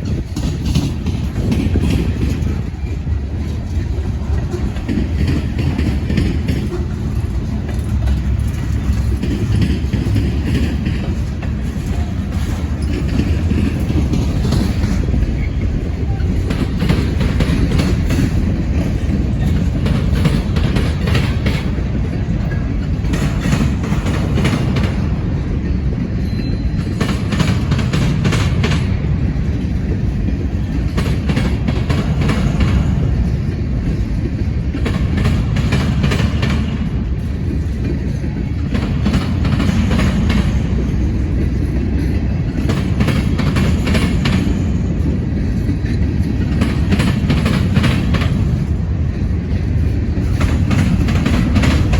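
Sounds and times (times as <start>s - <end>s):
freight train rumbling: 0.0s - 51.9s.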